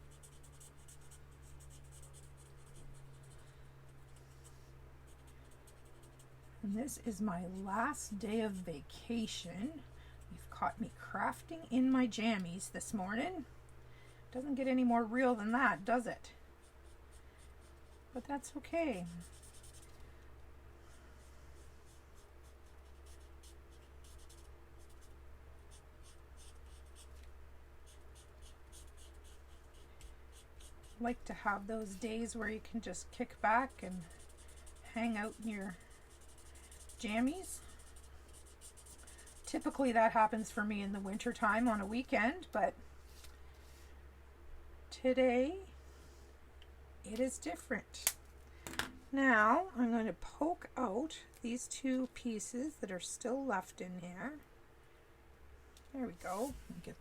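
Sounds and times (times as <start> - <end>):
marker scratching on card: 0.0 - 3.4, 5.1 - 6.3, 21.9 - 25.1, 27.9 - 31.1, 33.5 - 39.8
low electrical hum: 0.0 - 57.0
marker tip scratching on card: 27.9 - 31.0.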